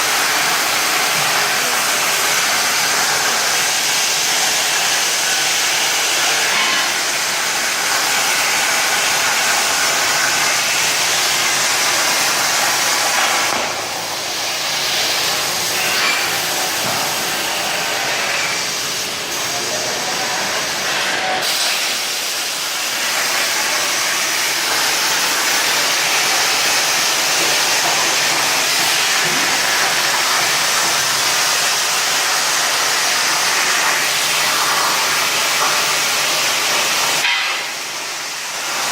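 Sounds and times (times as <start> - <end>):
plasma torch arc hissing: 10.8 - 32.1.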